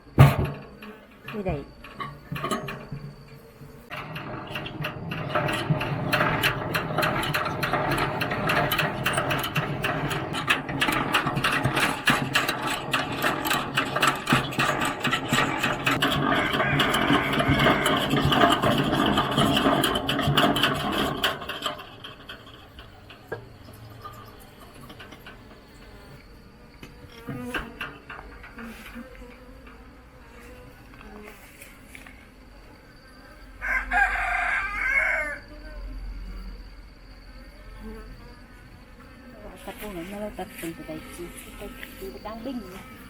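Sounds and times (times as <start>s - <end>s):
geared mechanism clattering whir: 0.0s - 30.0s.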